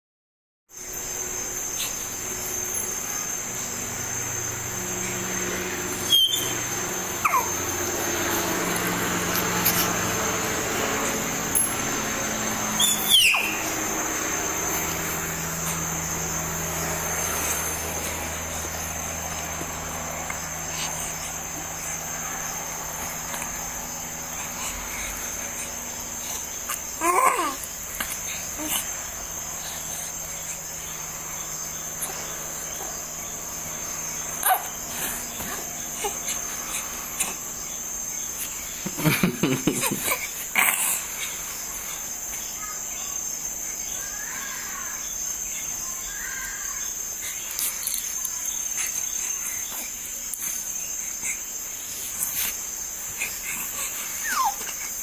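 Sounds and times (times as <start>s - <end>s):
high-pitched chirring: 5.9s - 8.2s, 11.0s - 19.4s
baby babbling and cooing: 7.2s - 7.6s, 26.7s - 27.7s, 53.2s - 54.9s.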